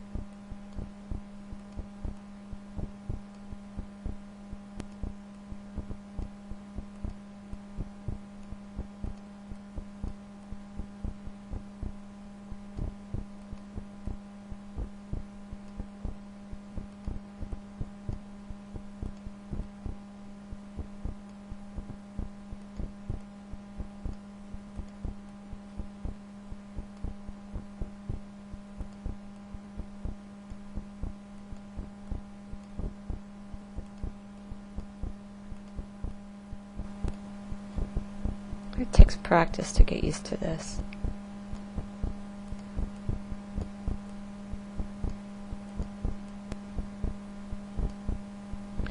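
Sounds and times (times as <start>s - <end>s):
low electrical hum: 0.0s - 48.9s
computer mouse clicking: 33.8s - 34.1s, 34.8s - 35.8s, 42.4s - 44.2s.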